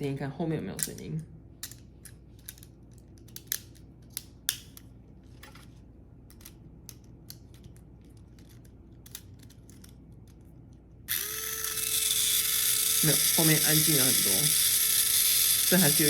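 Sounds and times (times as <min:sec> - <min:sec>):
small plastic clicks and snaps: 0:01.6 - 0:04.9.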